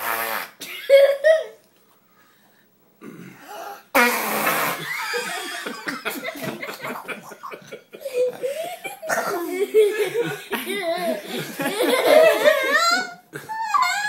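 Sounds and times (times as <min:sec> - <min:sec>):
child making fake fart noise: 0:00.0 - 0:00.6, 0:03.9 - 0:05.2
child laughing: 0:00.8 - 0:01.6, 0:04.8 - 0:14.0.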